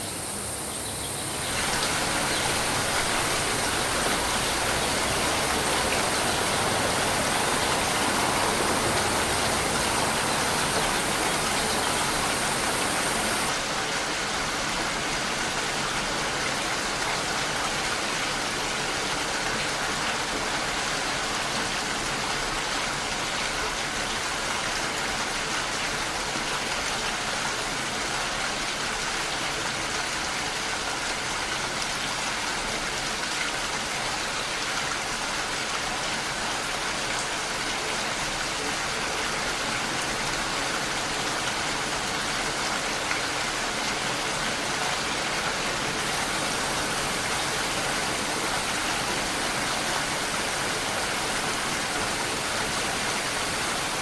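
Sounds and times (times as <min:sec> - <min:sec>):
heavy rain hiss: 0:00.0 - 0:13.8, 0:45.7 - 0:54.0.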